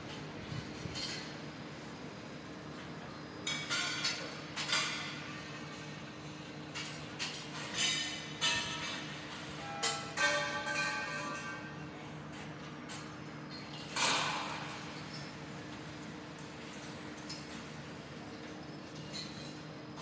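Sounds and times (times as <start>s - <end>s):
scaffolding tubes clanging: 6.8s - 11.7s.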